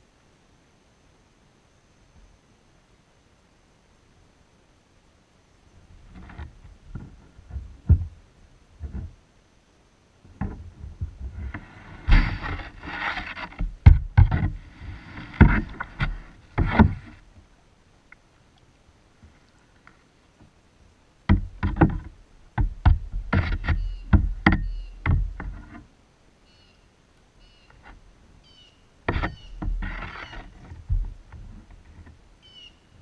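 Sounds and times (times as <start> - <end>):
knocks and scraping on kayak hull: 5.9 - 9.3, 10.3 - 17.5, 21.2 - 25.9, 29.0 - 32.3.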